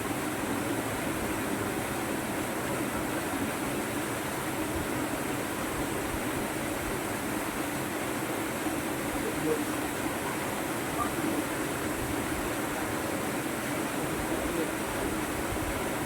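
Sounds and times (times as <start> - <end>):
waterfall and rushing river: 0.0 - 16.0.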